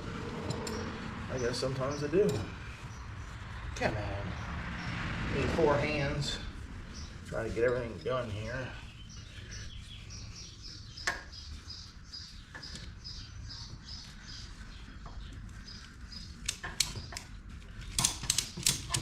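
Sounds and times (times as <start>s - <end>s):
steady low hum: 0.0s - 17.5s
small bird chirping: 6.9s - 17.3s
ratchet strap clicking: 16.3s - 19.0s.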